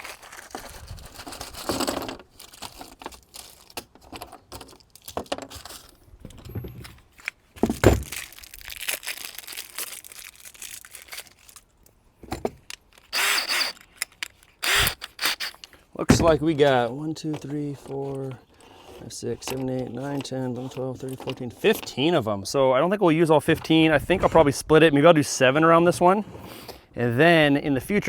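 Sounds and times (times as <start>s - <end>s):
plastic packaging rustling and tearing: 0.0s - 12.0s
plastic parts clicking: 0.4s - 22.1s.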